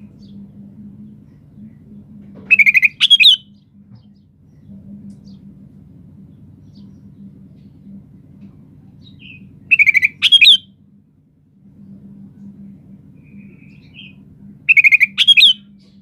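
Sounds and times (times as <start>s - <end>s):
bird singing: 0.0s - 5.6s, 6.2s - 8.2s, 9.0s - 10.8s, 13.1s - 16.0s
faint low hum: 0.0s - 16.0s.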